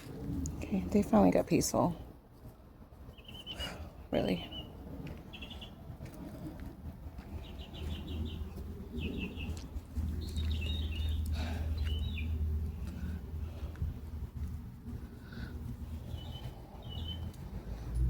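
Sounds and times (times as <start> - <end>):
songbird chirping trills: 3.0 - 6.0, 7.2 - 12.8, 15.9 - 18.0.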